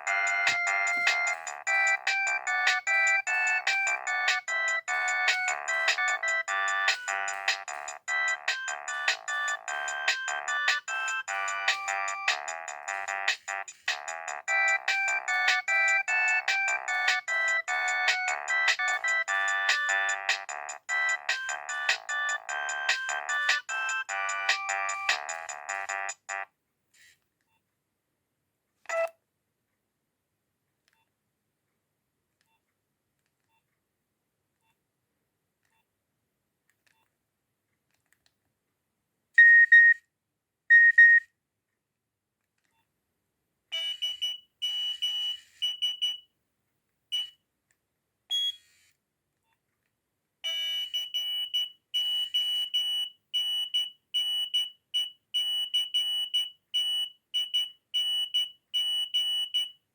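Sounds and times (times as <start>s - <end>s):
mobile phone beep tones: 28.9s - 29.1s, 39.4s - 40.0s, 40.7s - 41.3s, 48.3s - 48.7s.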